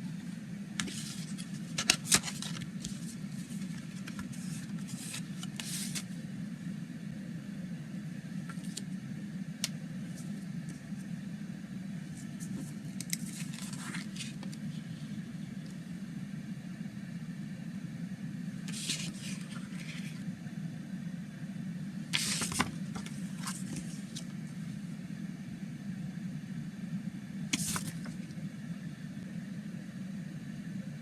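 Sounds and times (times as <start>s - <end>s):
low background hum: 0.0s - 31.0s
cardboard rustles and scrapes: 0.8s - 6.1s, 12.2s - 14.6s, 18.7s - 20.2s, 22.2s - 24.3s, 27.6s - 28.2s.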